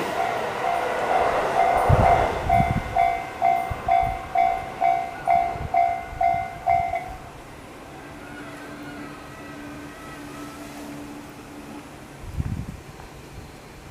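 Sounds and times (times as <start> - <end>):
level-crossing warning bell dinging: 0.0 - 12.1.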